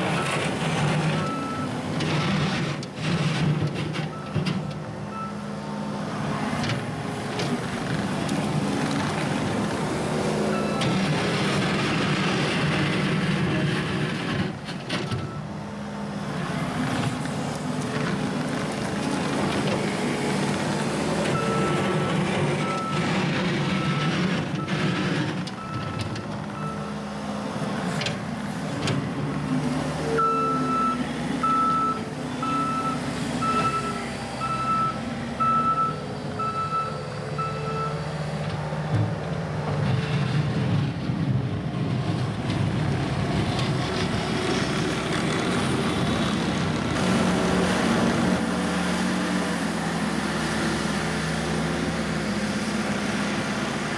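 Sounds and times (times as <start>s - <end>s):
diesel engine running: 0.0s - 53.9s
reversing alarm beeping: 30.2s - 38.0s.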